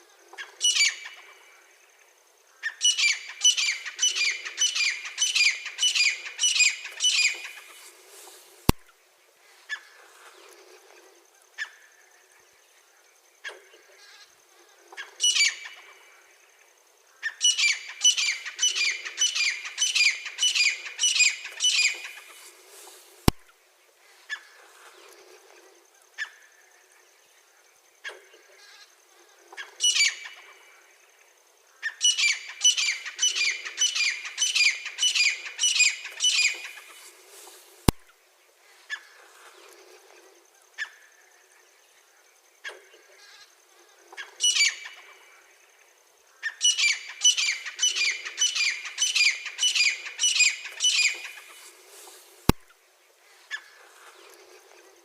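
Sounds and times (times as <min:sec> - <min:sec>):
francolin calling: 0:00.3 - 0:01.6, 0:02.5 - 0:08.9, 0:15.0 - 0:16.3, 0:17.1 - 0:23.5, 0:29.6 - 0:30.8, 0:31.8 - 0:38.1, 0:43.9 - 0:45.7, 0:46.3 - 0:52.7.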